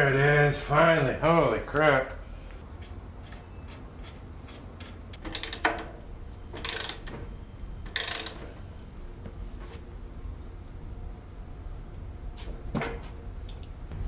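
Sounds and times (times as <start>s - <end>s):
ratchet wrench clicking: 5.2s - 6.0s, 6.6s - 7.2s, 7.8s - 8.5s.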